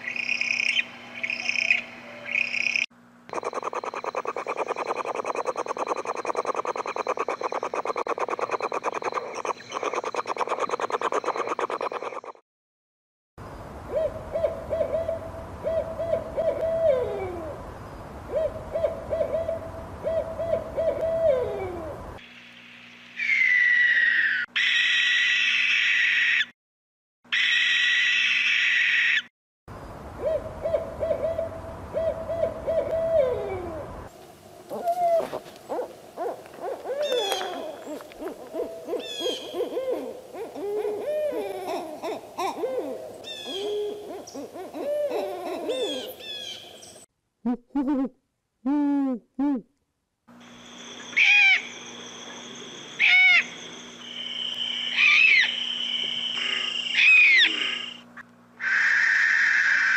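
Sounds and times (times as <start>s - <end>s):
owls hooting: 18.3s - 22.0s, 30.2s - 33.9s, 34.7s - 46.8s, 51.1s - 51.8s, 53.0s - 53.6s, 54.3s - 59.9s.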